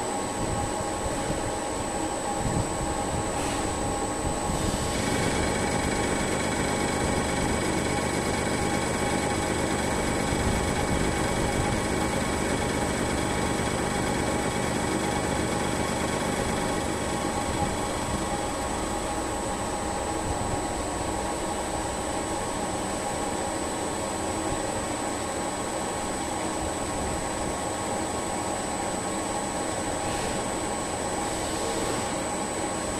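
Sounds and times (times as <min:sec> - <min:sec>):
lathe spindle hum and whine: 0:00.0 - 0:32.9.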